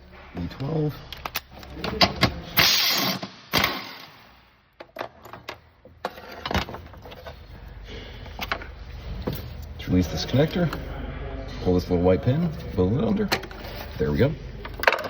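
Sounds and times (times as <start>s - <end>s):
clicks and knocks of tool and bolts: 1.1s - 2.4s, 4.8s - 7.4s, 14.6s - 15.0s.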